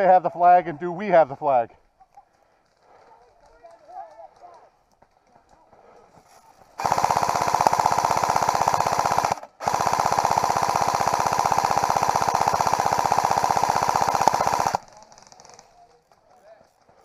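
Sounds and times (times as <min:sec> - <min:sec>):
airsoft gun firing full-auto: 0:06.8 - 0:15.8.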